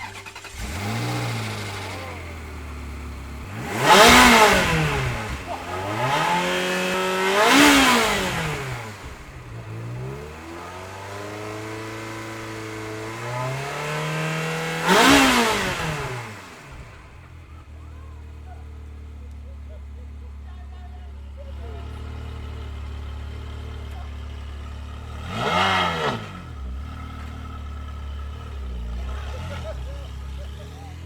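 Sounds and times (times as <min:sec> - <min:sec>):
car engine revving hard: 0:00.0 - 0:19.8, 0:20.4 - 0:31.0.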